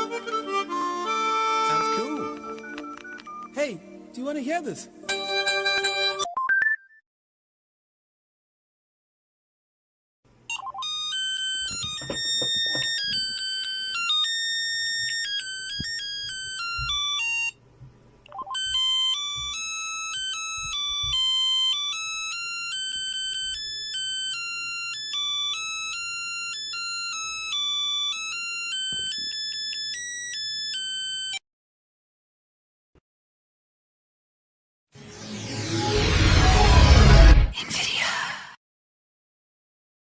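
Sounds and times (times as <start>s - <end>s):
smartphone ringtone melody: 0.0s - 3.9s, 5.0s - 7.0s, 10.5s - 17.6s, 18.3s - 31.4s.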